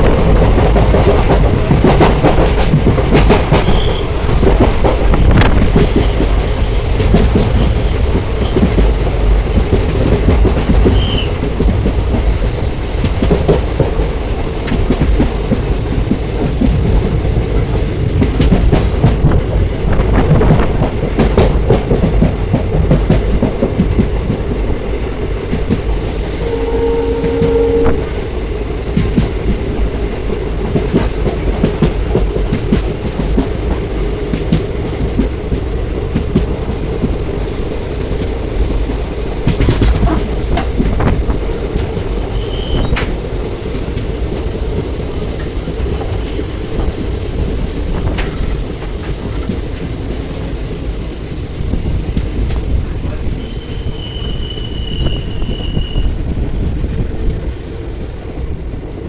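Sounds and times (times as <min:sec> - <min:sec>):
train coaches rumbling: 0:00.0 - 0:59.0
wheels clacking over rail joints: 0:00.0 - 0:59.0.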